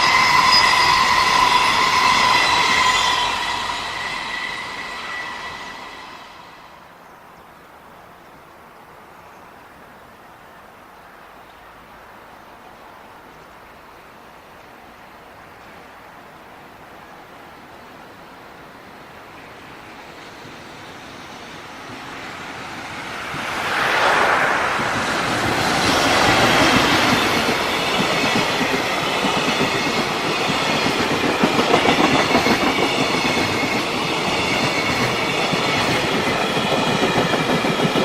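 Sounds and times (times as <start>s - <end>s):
freight train passing: 0.0s - 7.1s, 15.6s - 38.0s.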